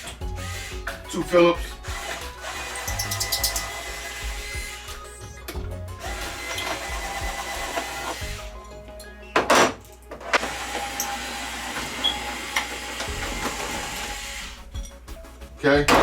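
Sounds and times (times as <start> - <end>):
music: 0.0 - 16.0
cordless drill running: 0.4 - 4.9, 6.0 - 8.5, 10.4 - 14.6.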